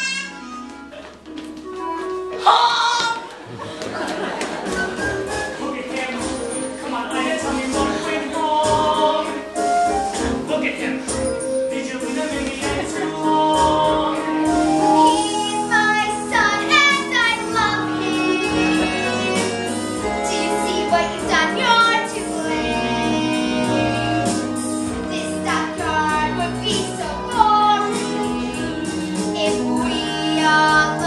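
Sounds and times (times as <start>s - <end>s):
instrumental accompaniment: 0.0s - 31.0s
young performers singing: 5.6s - 9.6s, 10.2s - 31.0s.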